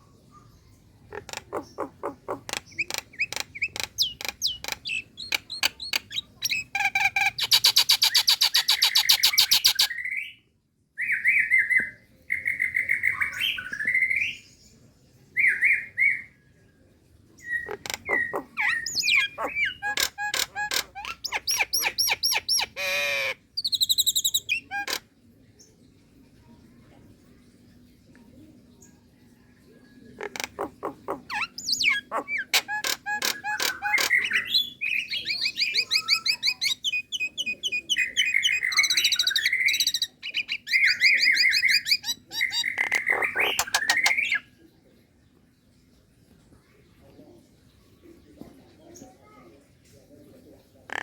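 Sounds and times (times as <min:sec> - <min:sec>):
myna calling: 0:01.1 - 0:09.8, 0:17.7 - 0:25.0, 0:30.2 - 0:44.4.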